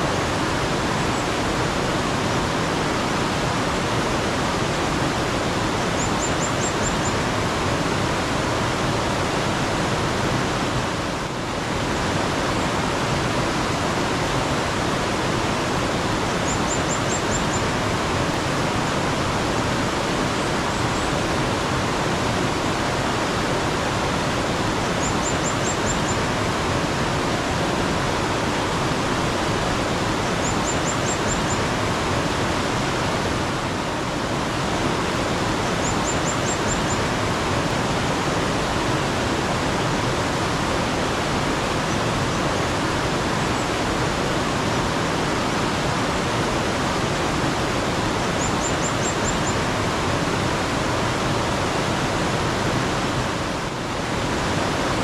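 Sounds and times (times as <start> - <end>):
stream water rushing: 0.0 - 55.0
small bird chirping: 16.4 - 17.7, 30.4 - 31.7, 35.8 - 37.0, 48.4 - 49.6.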